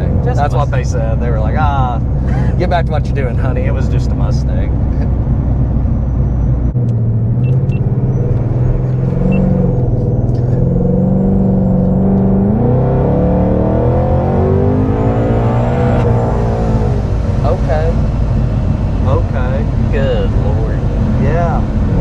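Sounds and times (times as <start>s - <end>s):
car engine accelerating: 0.0s - 22.0s.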